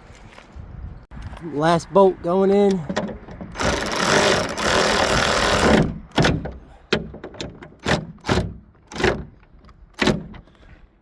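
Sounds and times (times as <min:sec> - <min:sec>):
power tool running bolt in: 0:03.5 - 0:06.4.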